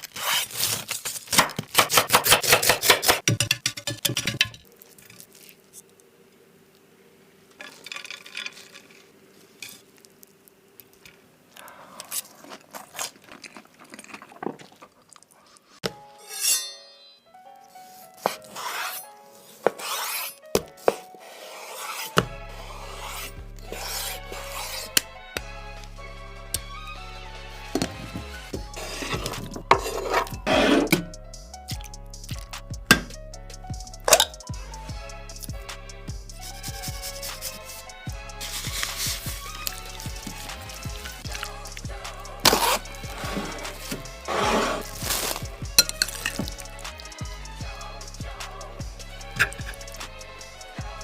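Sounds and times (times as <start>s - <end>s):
background music with low bass: 22.2s - 51.0s.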